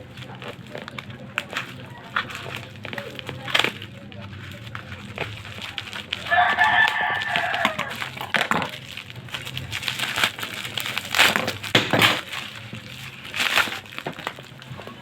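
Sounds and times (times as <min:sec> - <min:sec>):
packaging rustling: 0:00.0 - 0:15.0
rooster crowing: 0:06.2 - 0:08.3.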